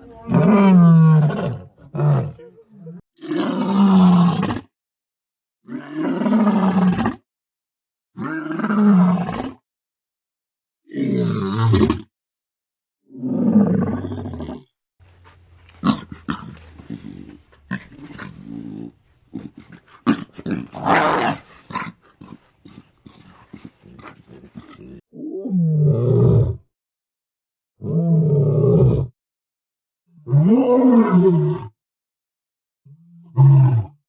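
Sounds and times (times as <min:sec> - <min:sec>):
lion harsh calls: 0:00.0 - 0:02.6, 0:15.7 - 0:25.0
lion roaring: 0:00.1 - 0:02.5, 0:03.2 - 0:04.7, 0:05.7 - 0:07.2, 0:08.2 - 0:09.6, 0:13.1 - 0:14.7, 0:15.7 - 0:26.6, 0:30.2 - 0:31.7, 0:33.2 - 0:33.9.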